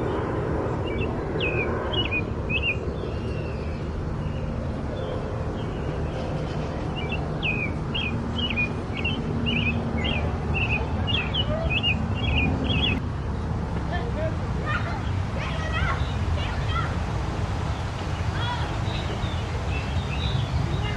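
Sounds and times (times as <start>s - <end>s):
low outdoor rumble: 0.0s - 20.9s
bird chirping: 0.8s - 13.5s, 17.7s - 20.9s.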